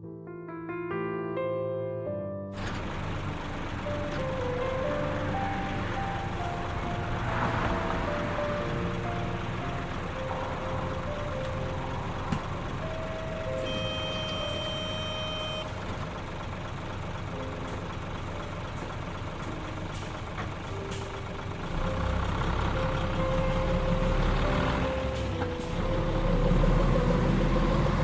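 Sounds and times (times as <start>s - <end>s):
combine harvester engine drone: 2.6s - 28.0s
electronic warning beep: 12.9s - 15.8s.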